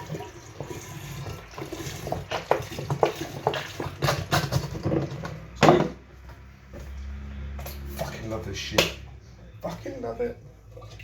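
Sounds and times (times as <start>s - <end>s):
containers clinking and knocking: 0.0s - 6.1s, 7.6s - 10.1s.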